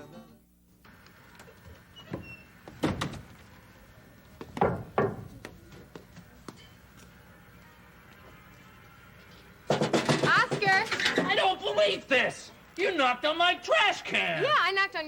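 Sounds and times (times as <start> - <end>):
knocking on metal trash can lid: 4.6 - 5.4.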